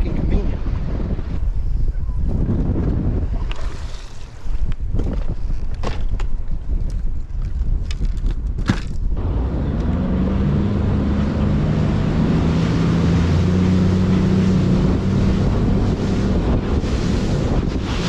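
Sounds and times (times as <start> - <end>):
wind noise on microphone: 0.0 - 18.0
outboard motor running: 9.2 - 18.0.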